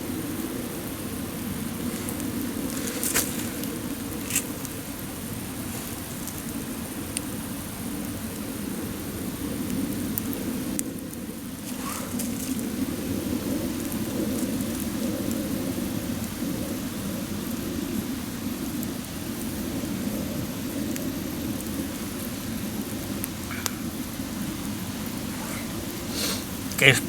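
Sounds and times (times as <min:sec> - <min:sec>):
campfire burning: 0:00.0 - 0:27.0
fire crackles: 0:00.0 - 0:27.0.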